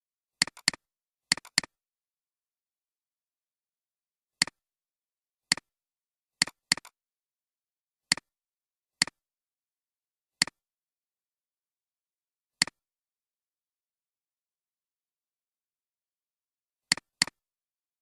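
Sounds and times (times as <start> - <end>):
computer mouse clicking: 0.4 - 1.8, 5.5 - 5.7, 6.4 - 7.0, 8.1 - 8.3, 12.6 - 12.8, 16.9 - 17.4.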